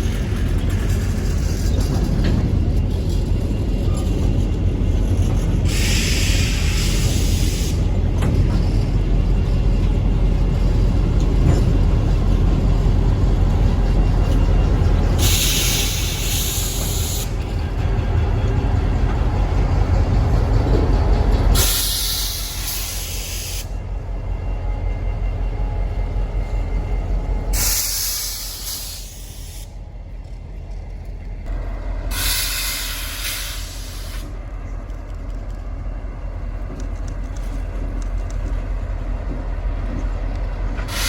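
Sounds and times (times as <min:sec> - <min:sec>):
freight train rumbling: 0:00.0 - 0:41.0.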